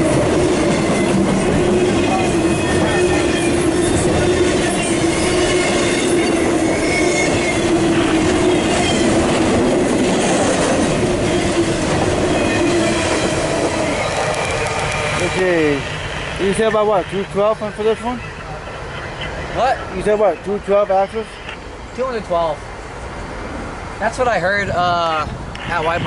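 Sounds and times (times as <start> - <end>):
train wheels rumbling on rails: 0.0 - 26.0
wheel squeal: 4.7 - 9.2.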